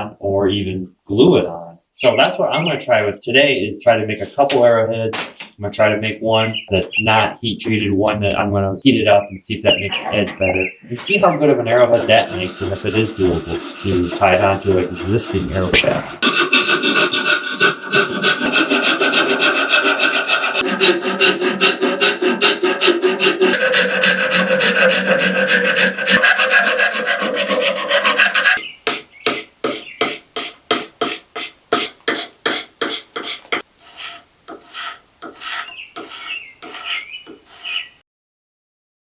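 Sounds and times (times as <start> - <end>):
file rasping on wood: 11.6 - 38.0.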